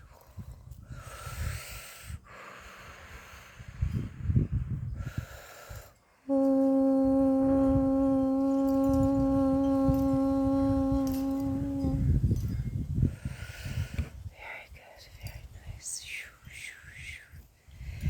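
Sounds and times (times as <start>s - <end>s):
steady held tone: 6.3s - 12.2s.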